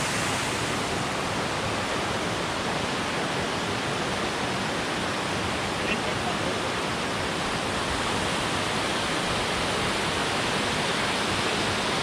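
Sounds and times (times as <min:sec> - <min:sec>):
waterfall crashing: 0:00.0 - 0:02.3.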